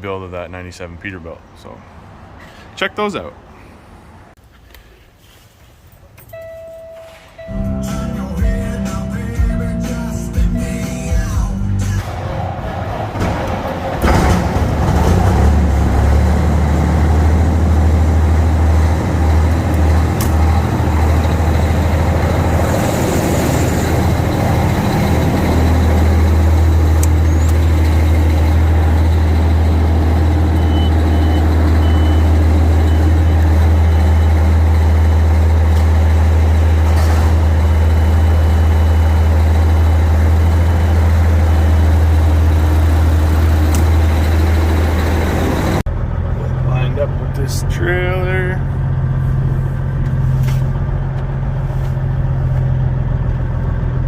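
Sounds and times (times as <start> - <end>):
faint high beeping: 6.3 - 8.2
diesel truck engine running: 7.5 - 54.0.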